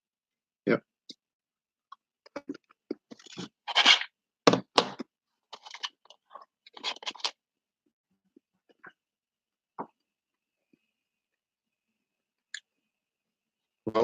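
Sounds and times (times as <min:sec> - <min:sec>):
person crunching candy: 0:05.6 - 0:07.4.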